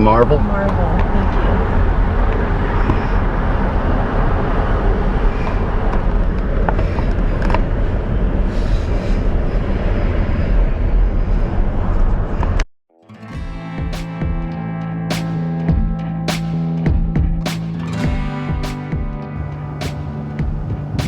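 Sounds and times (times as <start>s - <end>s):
car road and engine rumble: 0.0s - 12.6s.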